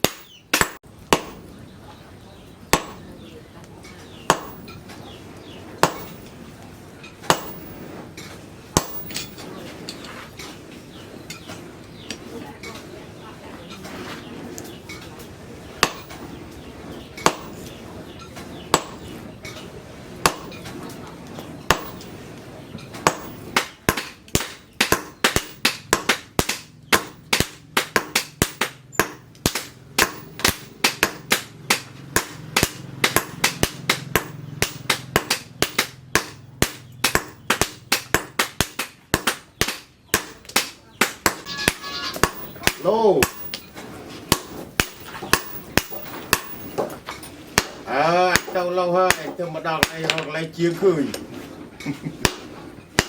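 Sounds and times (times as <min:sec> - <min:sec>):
hammer striking metal on anvil: 0:00.0 - 0:01.4, 0:04.3 - 0:04.8, 0:08.8 - 0:09.4, 0:17.2 - 0:17.7, 0:18.7 - 0:19.1, 0:20.2 - 0:20.7, 0:23.0 - 0:43.7, 0:44.3 - 0:47.0.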